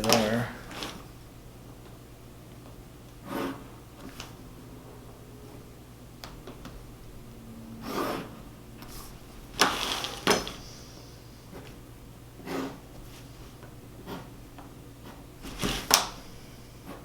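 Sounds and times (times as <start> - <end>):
tools scraping across board: 3.2 - 4.4, 12.4 - 12.9, 14.0 - 14.4.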